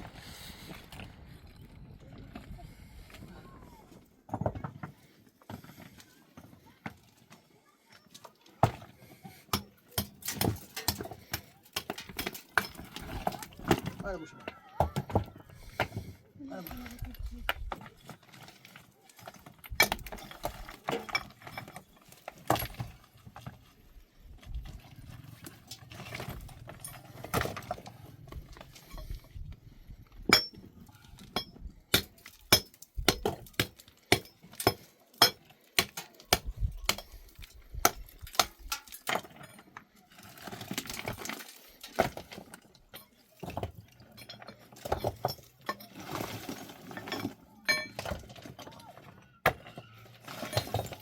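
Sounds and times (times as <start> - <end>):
hand tools clinking on stone: 30.3 - 36.2, 46.9 - 48.2.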